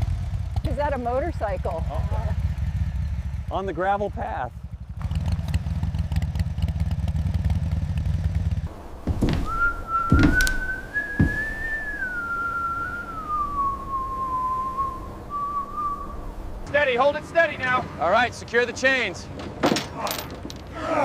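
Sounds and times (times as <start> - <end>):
motorcycle engine rumbling: 0.0 - 21.0
sharp knocks: 8.7 - 12.0
long whistled tone: 9.2 - 16.7.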